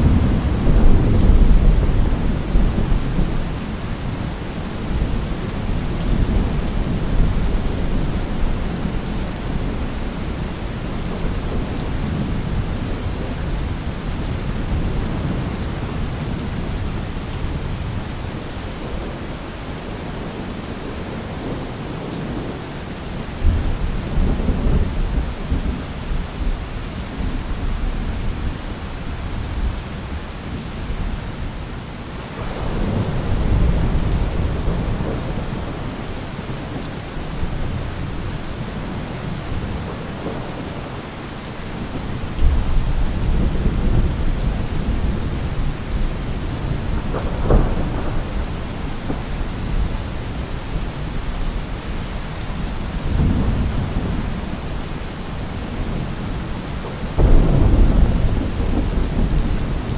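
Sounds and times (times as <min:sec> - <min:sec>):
steady rain falling: 0:00.0 - 0:59.9
sharp thunder crack: 0:57.2 - 0:59.4
thunder rolling: 0:57.2 - 0:59.9.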